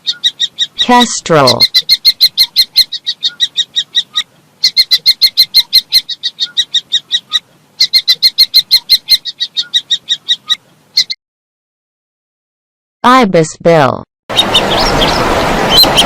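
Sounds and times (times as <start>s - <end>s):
kestrel calling: 0.0s - 11.2s, 14.3s - 16.0s.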